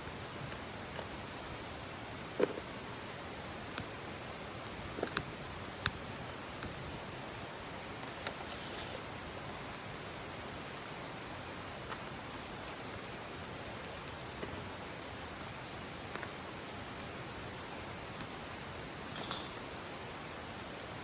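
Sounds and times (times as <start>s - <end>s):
campfire hissing: 0.0s - 21.0s
fire crackles: 0.0s - 21.0s.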